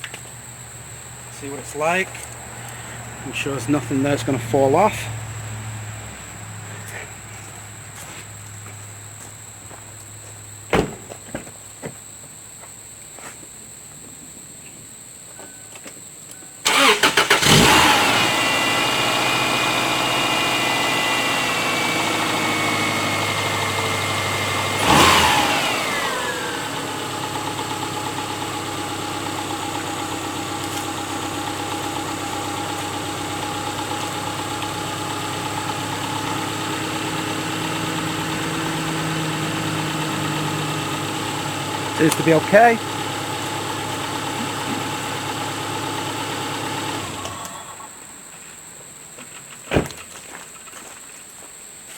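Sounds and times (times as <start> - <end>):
car engine starting and idling: 0.0 - 9.0, 16.6 - 48.3.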